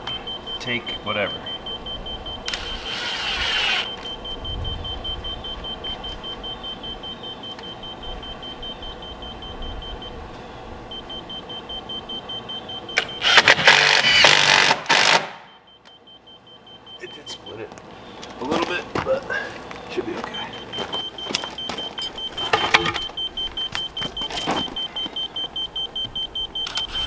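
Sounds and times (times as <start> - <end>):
faint high beep: 0.0 - 2.8, 3.6 - 13.3, 15.4 - 27.0
power drill driving screw into wood: 2.5 - 4.0, 13.0 - 15.5.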